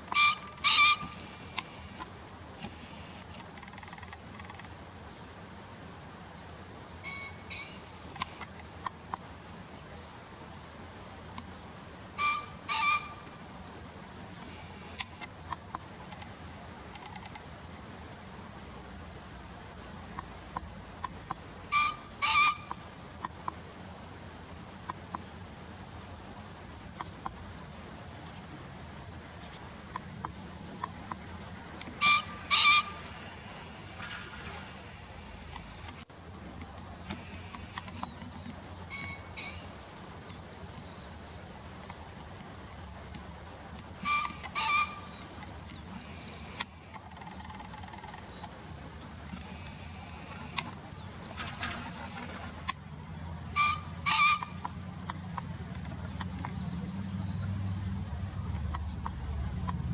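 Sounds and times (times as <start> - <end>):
pheasant crowing two-note call: 7.0 - 7.8.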